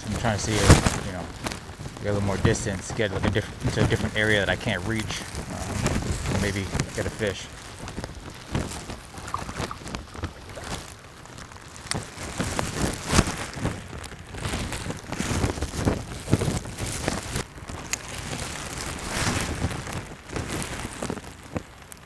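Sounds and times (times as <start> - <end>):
wind noise on microphone: 0.0 - 21.9
rain drops hitting: 0.0 - 22.0.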